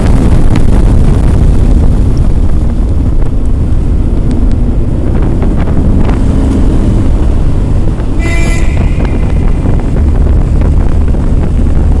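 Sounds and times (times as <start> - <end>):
vehicle engine running: 0.0 - 12.0
wind on microphone: 0.0 - 12.0
vehicle horn beep: 8.1 - 10.0.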